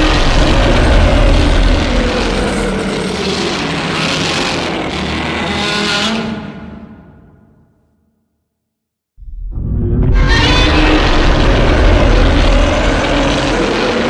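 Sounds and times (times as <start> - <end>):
rough rumbling sound effect: 0.0 - 5.0, 9.2 - 14.0.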